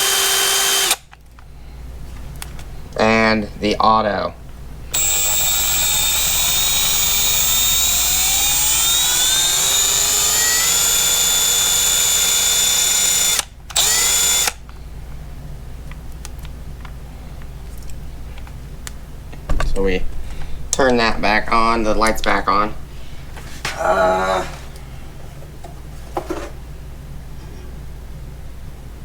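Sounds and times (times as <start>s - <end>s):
impact wrench motor whine: 0.0s - 1.0s, 4.9s - 14.6s.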